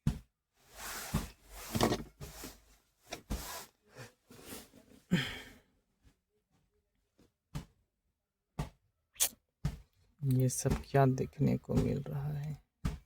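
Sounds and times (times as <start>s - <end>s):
cloth rustling: 0.6s - 5.1s.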